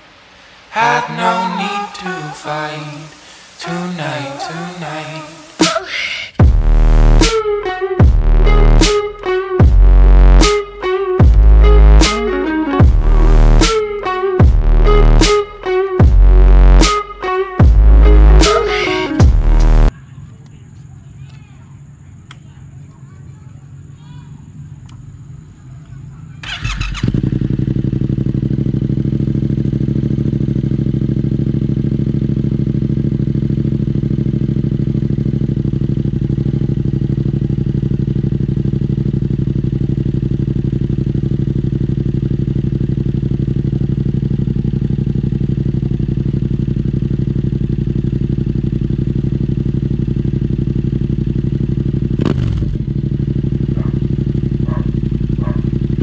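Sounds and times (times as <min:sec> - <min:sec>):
motorcycle engine idling: 0:19.2 - 0:56.0.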